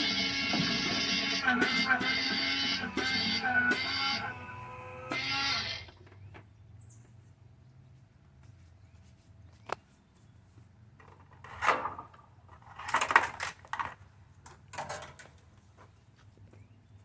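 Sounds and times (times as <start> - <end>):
rustling and scraping: 8.4 - 16.6.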